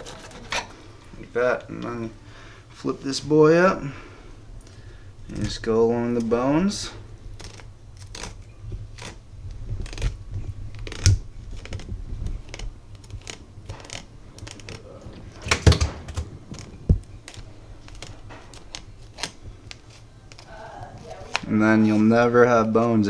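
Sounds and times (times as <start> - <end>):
knife cutting fish bones: 7.3 - 9.2, 9.8 - 22.8.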